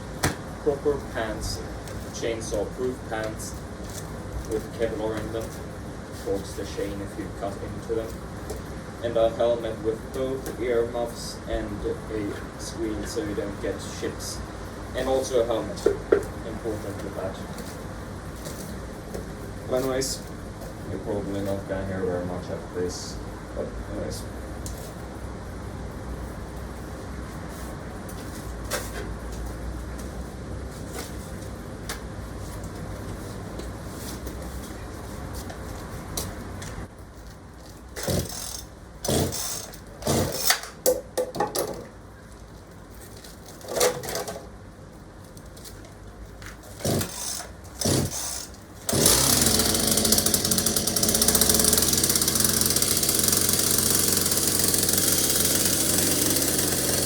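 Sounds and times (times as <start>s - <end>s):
chainsaw engine sputtering and running: 38.0s - 40.6s, 46.8s - 57.0s
starter cord pulls: 38.0s - 40.7s, 46.8s - 57.0s.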